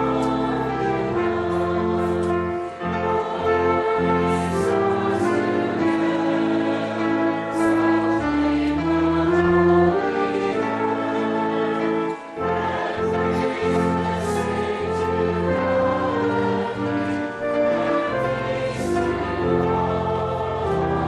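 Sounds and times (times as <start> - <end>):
sacred choral music with instruments: 0.0 - 21.0.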